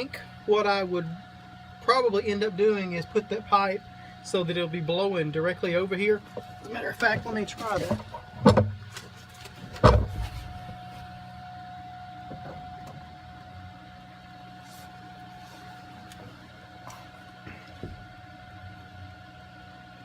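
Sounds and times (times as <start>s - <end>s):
fan humming with thin whine: 0.0s - 20.0s
vent pipe knocks: 7.1s - 8.9s, 9.7s - 10.8s.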